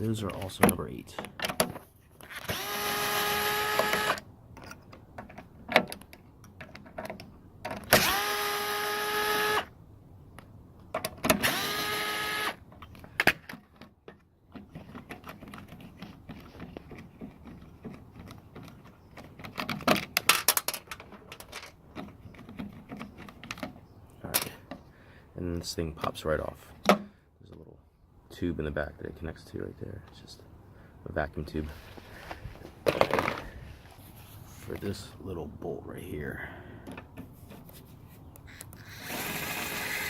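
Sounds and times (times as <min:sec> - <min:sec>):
bolts and metal parts rattling: 0:00.0 - 0:02.5, 0:03.8 - 0:07.9, 0:12.7 - 0:24.9, 0:32.8 - 0:33.6
power driver whirring: 0:02.3 - 0:04.2, 0:07.9 - 0:09.7, 0:11.4 - 0:12.6, 0:38.5 - 0:40.0.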